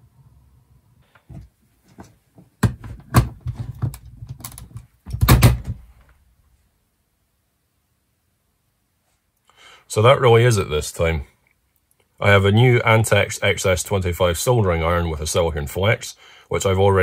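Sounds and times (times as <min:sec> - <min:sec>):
loud thunks: 0:05.0 - 0:05.9.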